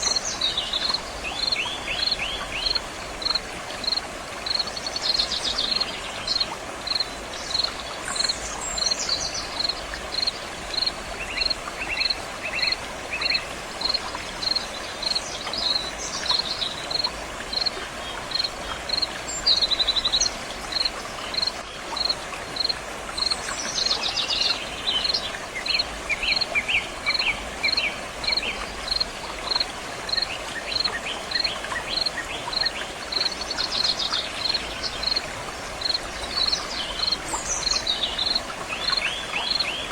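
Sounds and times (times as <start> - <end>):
flowing water rushing: 0.0 - 39.9
cricket chirping: 0.8 - 8.3, 13.8 - 17.7.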